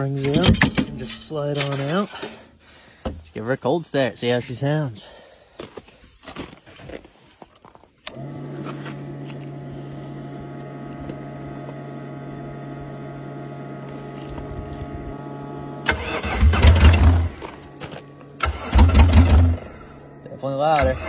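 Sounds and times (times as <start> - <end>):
atv engine cranking and running: 0.0 - 2.6, 8.0 - 21.0
steady hum: 8.1 - 20.6.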